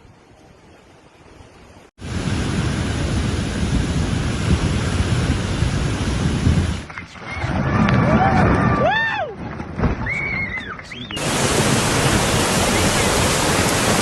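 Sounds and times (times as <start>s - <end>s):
loud steady rushing noise: 2.0s - 6.9s, 11.2s - 14.0s.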